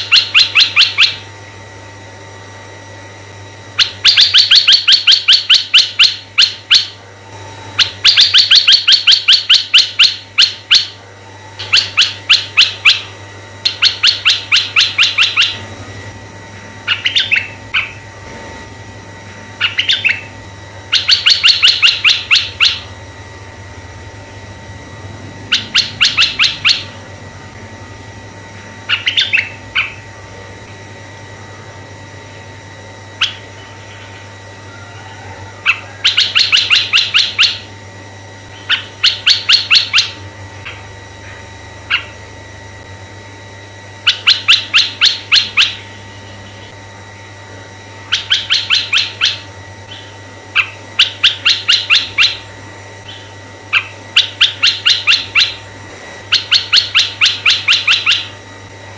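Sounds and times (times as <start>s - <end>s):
bird chattering calls: 0.0s - 1.3s, 3.8s - 7.0s, 7.8s - 11.0s, 11.6s - 15.7s, 16.9s - 18.1s, 19.6s - 23.0s, 25.4s - 27.1s, 28.9s - 30.1s, 33.2s - 34.2s, 34.8s - 37.7s, 38.5s - 42.3s, 44.0s - 46.7s, 48.1s - 55.7s, 56.3s - 58.4s
faint steady hum: 0.0s - 58.9s.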